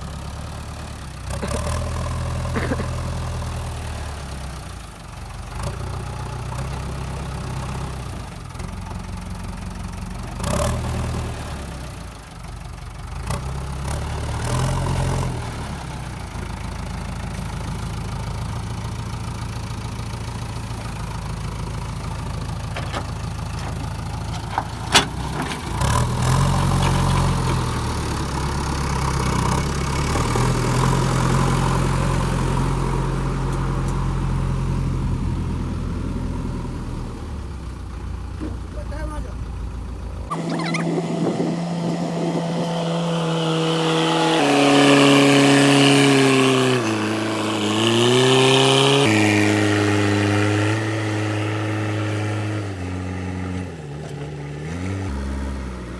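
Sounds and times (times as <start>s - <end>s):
diesel engine revving: 0.0s - 55.9s.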